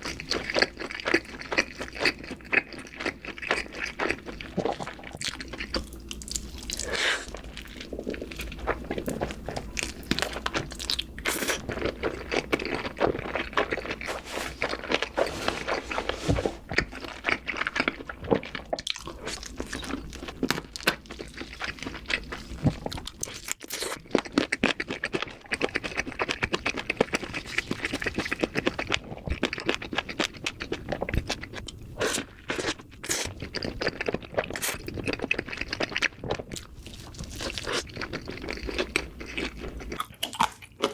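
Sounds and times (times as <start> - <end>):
person chewing food: 0.0 - 40.9.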